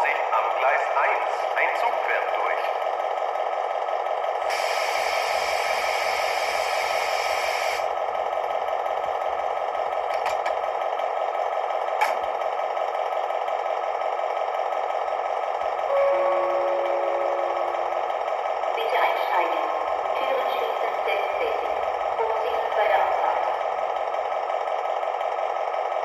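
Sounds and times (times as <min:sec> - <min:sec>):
diesel engine sound through small speaker: 0:00.0 - 0:26.0
hiss: 0:04.4 - 0:07.9.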